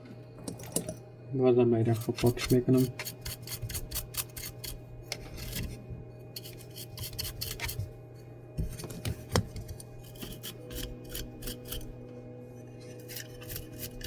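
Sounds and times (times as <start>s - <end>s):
steady electrical hum: 0.0s - 14.0s
small tool scraping circuit board: 1.9s - 5.8s, 6.4s - 7.9s, 9.6s - 12.0s, 12.8s - 14.0s.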